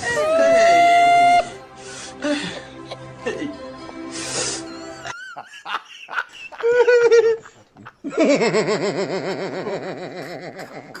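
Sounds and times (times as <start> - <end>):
person laughing: 5.0 - 11.0.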